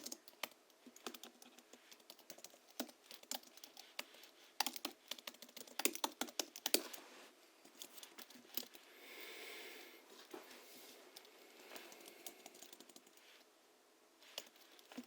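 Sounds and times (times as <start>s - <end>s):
clacky keyboard keystrokes: 0.0s - 3.8s, 4.6s - 6.9s.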